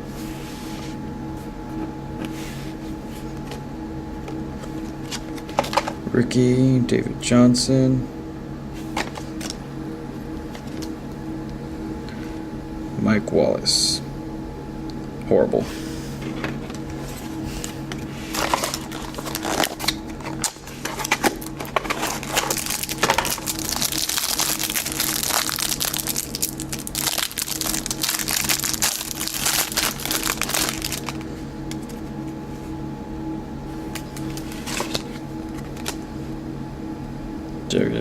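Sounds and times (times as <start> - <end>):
wrapper crinkling and tearing: 18.3 - 32.0.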